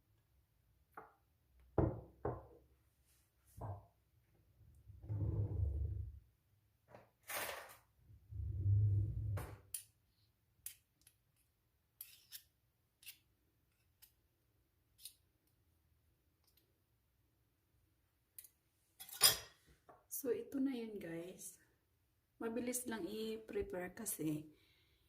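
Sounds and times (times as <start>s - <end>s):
spoon scraping: 12.0s - 13.2s.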